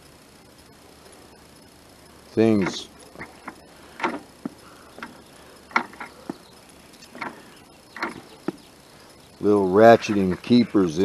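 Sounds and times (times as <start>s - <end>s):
ratchet clicking on lawnmower wheel: 2.4s - 6.3s, 6.9s - 8.6s.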